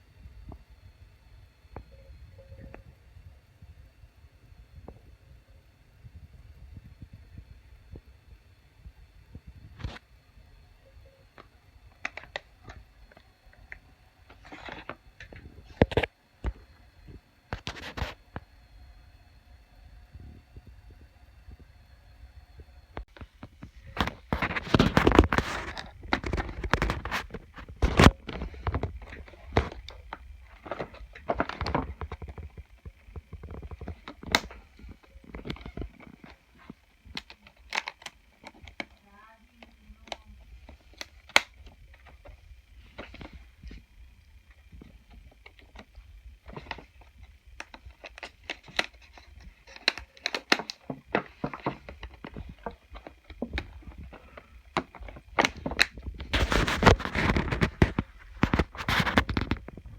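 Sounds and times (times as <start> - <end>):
packaging clicks and knocks: 23.1 - 39.0, 44.8 - 59.9
packaging rustling: 23.1 - 59.9.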